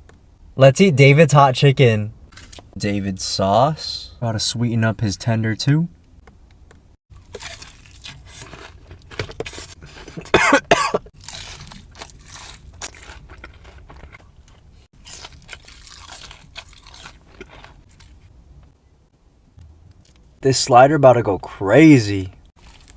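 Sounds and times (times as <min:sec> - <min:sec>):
crunching and chewing: 0:07.1 - 0:10.3, 0:11.1 - 0:18.3, 0:22.5 - 0:22.9
person coughing: 0:09.8 - 0:11.1.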